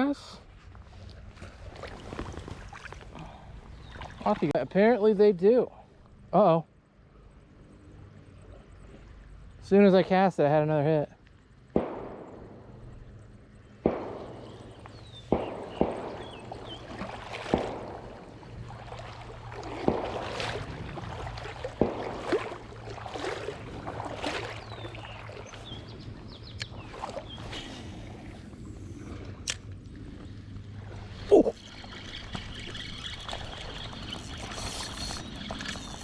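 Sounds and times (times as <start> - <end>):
river water flowing: 12.9 - 36.0
sharp water splashes: 13.8 - 28.2, 30.8 - 36.0.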